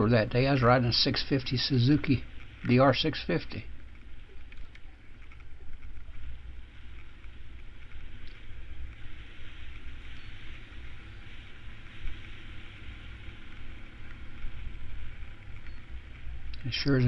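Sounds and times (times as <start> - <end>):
motorcycle engine rumble: 0.0 - 17.0.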